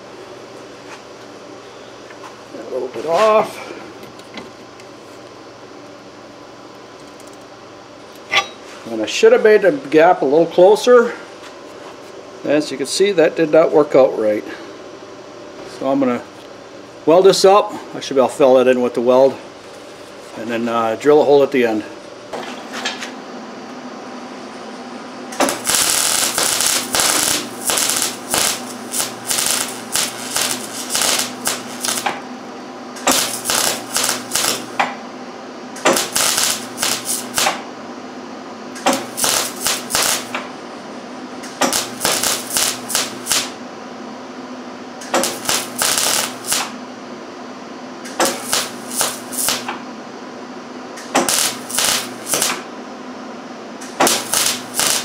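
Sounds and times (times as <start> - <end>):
steady hum: 0.0 - 55.0
welding arc crackling: 25.3 - 32.2, 33.0 - 34.8, 35.8 - 37.6, 38.8 - 40.4, 41.4 - 43.6, 45.0 - 46.8, 48.1 - 49.8, 51.0 - 52.7, 53.8 - 55.0.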